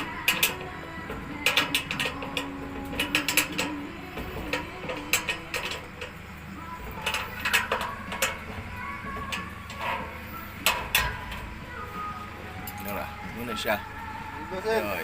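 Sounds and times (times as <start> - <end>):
metal parts clicking and clinking: 0.0 - 11.6.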